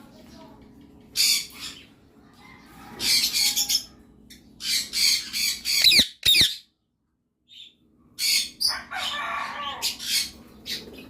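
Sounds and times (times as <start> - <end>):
bird squawking: 4.6 - 6.6.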